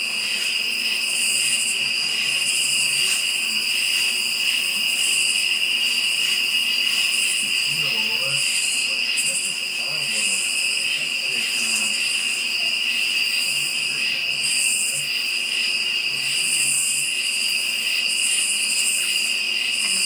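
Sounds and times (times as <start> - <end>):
crickets trilling: 0.0 - 20.0
katydids buzzing: 0.0 - 20.0.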